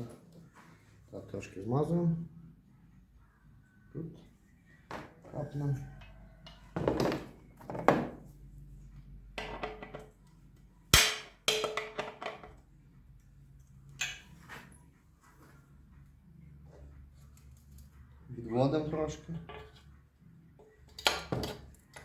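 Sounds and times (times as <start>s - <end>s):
metal parts and tools clattering: 9.4s - 10.2s, 11.0s - 12.6s, 19.1s - 19.9s.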